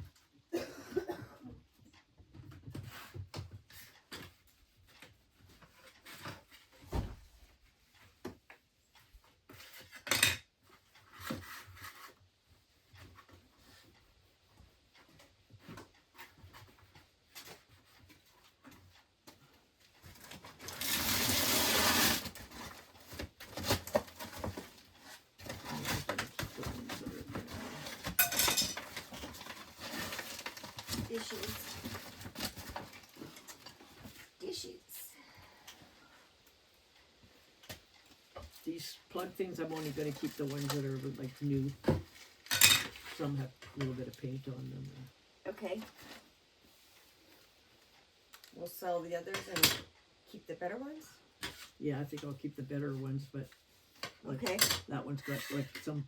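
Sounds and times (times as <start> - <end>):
objects knocking and clattering: 22.2 - 34.2.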